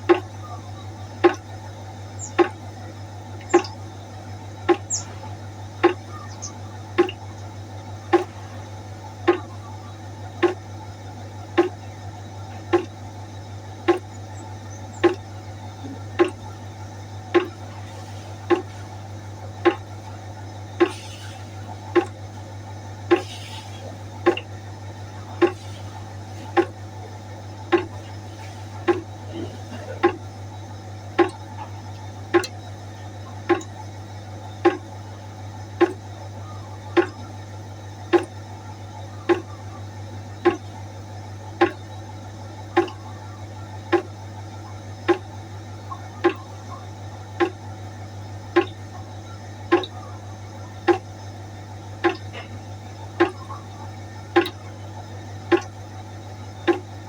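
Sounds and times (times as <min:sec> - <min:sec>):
water droplets plopping into pot: 0:04.7 - 0:07.5, 0:08.1 - 0:09.6, 0:11.6 - 0:11.8, 0:12.7 - 0:13.0, 0:13.9 - 0:15.3, 0:17.3 - 0:17.8, 0:19.6 - 0:21.0, 0:24.2 - 0:24.6, 0:26.5 - 0:30.3, 0:31.2 - 0:32.6, 0:34.6 - 0:34.9, 0:39.3 - 0:39.5, 0:41.6 - 0:41.9, 0:42.8 - 0:43.0, 0:45.1 - 0:45.3, 0:49.7 - 0:50.0, 0:50.9 - 0:51.1, 0:53.2 - 0:53.6, 0:54.4 - 0:54.6, 0:55.5 - 0:55.8.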